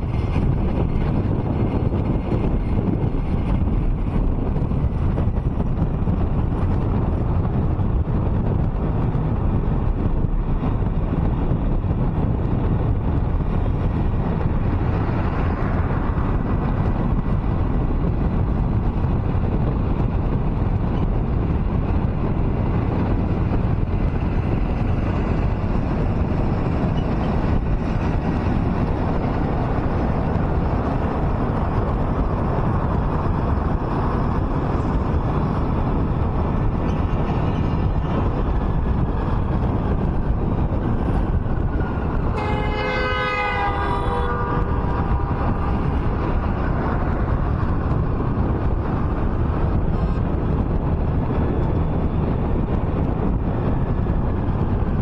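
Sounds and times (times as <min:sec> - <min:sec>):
road and wind noise: 0:00.0 - 0:55.0.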